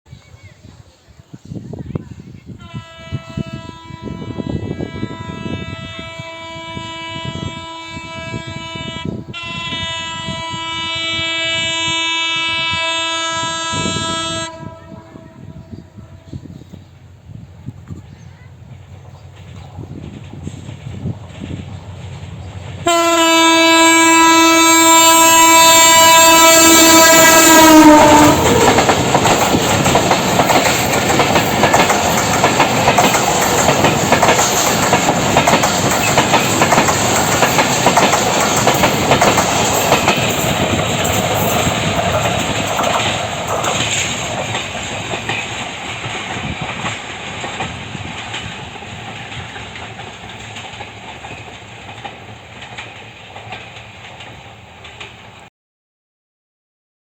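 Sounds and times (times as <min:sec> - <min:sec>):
train horn blast: 0:02.6 - 0:16.7, 0:22.8 - 0:43.1
train wheels clattering on rails: 0:17.9 - 0:23.4, 0:26.0 - 0:55.4.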